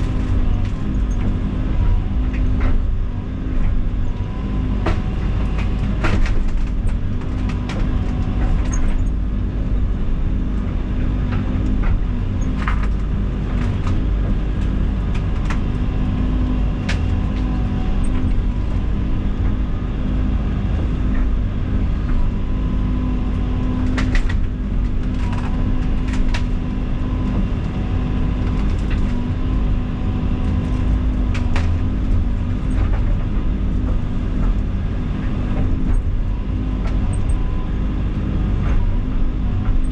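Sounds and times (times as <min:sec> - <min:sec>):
diesel engine running: 0:00.0 - 0:39.9
sharp cracks and knocks: 0:03.6 - 0:09.3, 0:10.6 - 0:19.7, 0:22.0 - 0:37.4.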